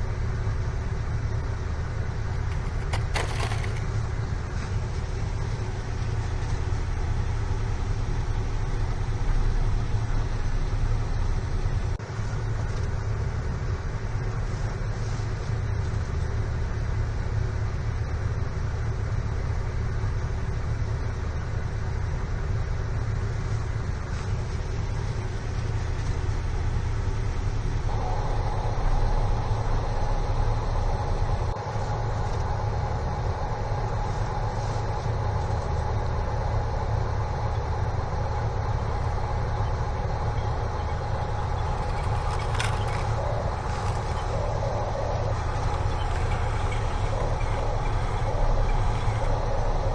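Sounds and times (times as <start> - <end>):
small electric motor whining: 2.3 - 4.1, 38.4 - 49.9.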